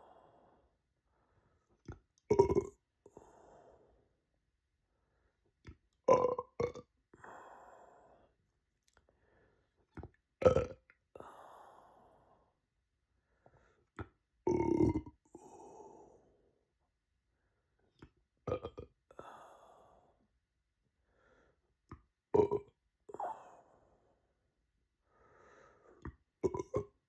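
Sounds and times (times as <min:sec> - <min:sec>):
person burping: 0:02.3 - 0:02.8, 0:06.1 - 0:06.8, 0:10.4 - 0:10.8, 0:14.5 - 0:15.2, 0:18.5 - 0:18.9, 0:22.4 - 0:23.3, 0:26.4 - 0:27.0.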